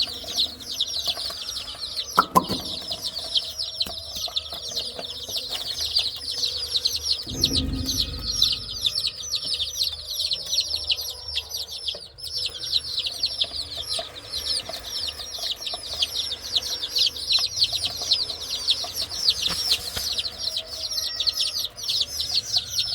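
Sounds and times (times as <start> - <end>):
baby chicks peeping: 0.0 - 22.9
dull low thump: 7.3 - 9.4.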